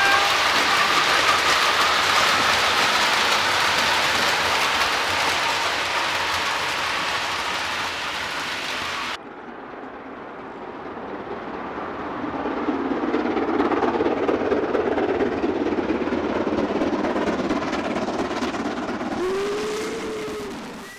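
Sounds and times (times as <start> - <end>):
train horn rising in pitch: 0.0 - 1.1
model train running: 0.0 - 20.9.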